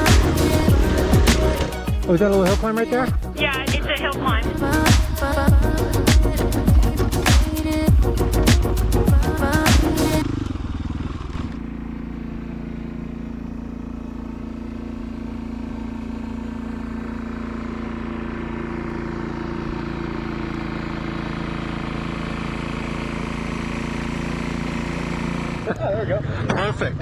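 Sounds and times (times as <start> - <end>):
dirt bike engine running: 0.0 - 25.8.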